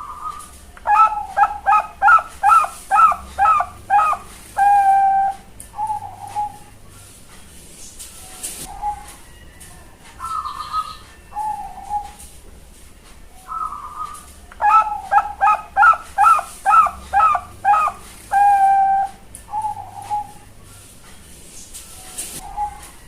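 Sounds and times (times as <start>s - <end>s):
dove cooing: 0.0s - 6.8s, 8.6s - 9.3s, 10.2s - 12.3s, 13.5s - 20.6s, 22.4s - 23.0s.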